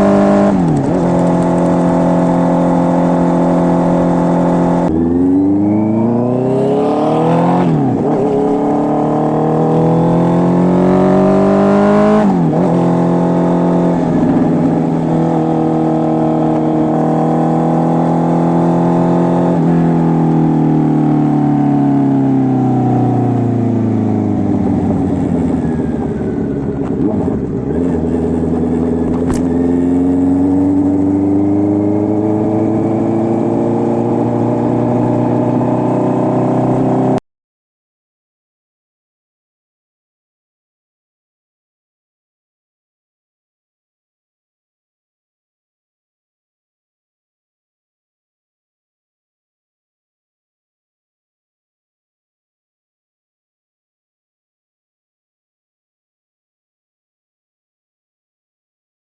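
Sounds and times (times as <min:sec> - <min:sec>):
motorcycle engine accelerating: 0:00.0 - 0:37.2.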